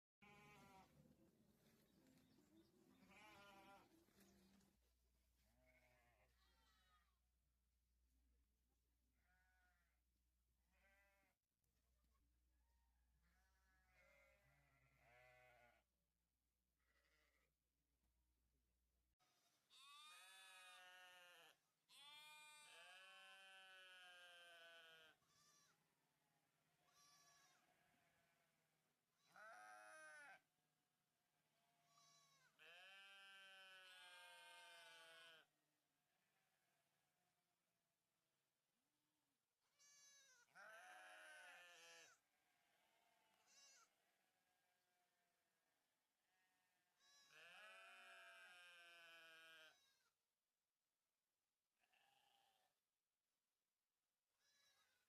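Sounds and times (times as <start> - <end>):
sheep bleating: 0.2 - 1.8, 2.9 - 4.6, 5.6 - 7.2, 9.2 - 9.9, 10.7 - 11.4, 13.2 - 15.9, 16.9 - 17.5, 19.2 - 25.8, 26.7 - 28.6, 29.2 - 30.4, 31.6 - 35.5, 39.7 - 44.7, 46.3 - 50.1, 51.8 - 52.7.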